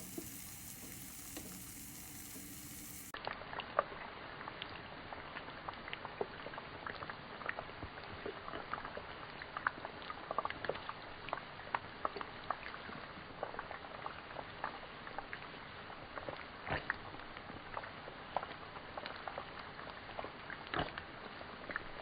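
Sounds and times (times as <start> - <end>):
small pops and crackles: 0.0 - 3.2
food sizzling and bubbling: 0.0 - 3.6.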